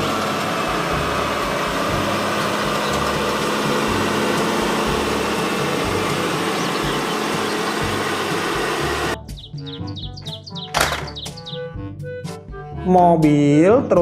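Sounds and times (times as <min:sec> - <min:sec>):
dump truck engine idling: 0:00.0 - 0:09.2.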